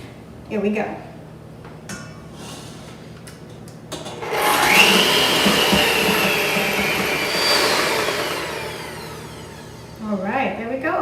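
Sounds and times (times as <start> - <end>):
electric mixer whining: 4.1 - 10.2.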